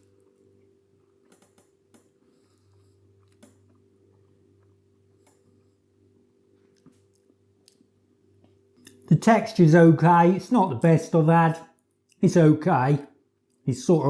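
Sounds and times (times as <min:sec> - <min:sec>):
faint steady hum: 0:00.0 - 0:14.0
soft clicks: 0:01.3 - 0:02.1.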